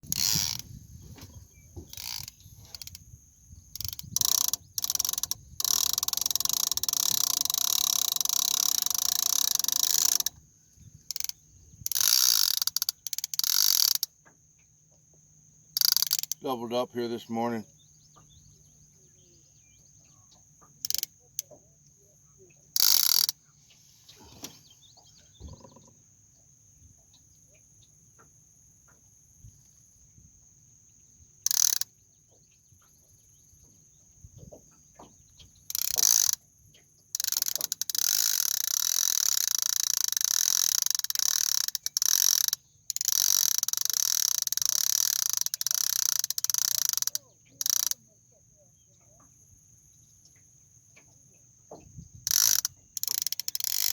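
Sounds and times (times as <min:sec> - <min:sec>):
fishing reel clicker buzzing: 0:00.1 - 0:00.8, 0:01.5 - 0:14.2, 0:15.8 - 0:17.5, 0:20.8 - 0:21.5, 0:22.7 - 0:23.4, 0:31.4 - 0:31.9, 0:35.7 - 0:36.4, 0:37.1 - 0:48.0, 0:52.2 - 0:53.9
high insect drone: 0:00.1 - 0:23.5, 0:25.3 - 0:32.2, 0:33.0 - 0:53.9.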